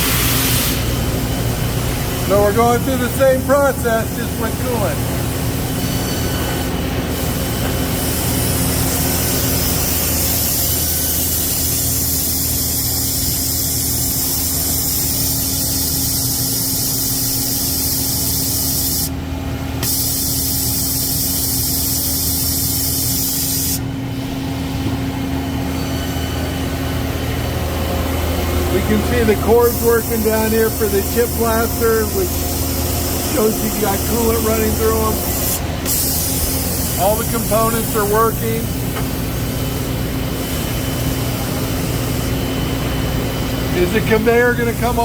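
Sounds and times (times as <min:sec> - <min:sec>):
coolant spray hissing: 0:00.0 - 0:06.1, 0:07.1 - 0:19.2, 0:19.8 - 0:23.9, 0:28.6 - 0:45.0
machine hum: 0:00.1 - 0:45.0.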